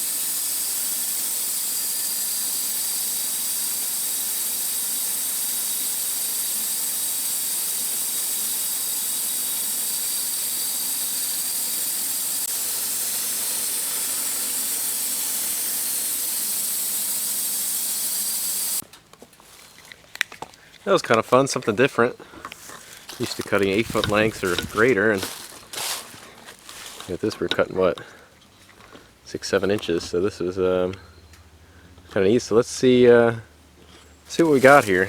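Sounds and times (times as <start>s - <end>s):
band sawmill cutting wood: 0.0s - 18.8s, 23.0s - 27.6s, 34.3s - 35.0s.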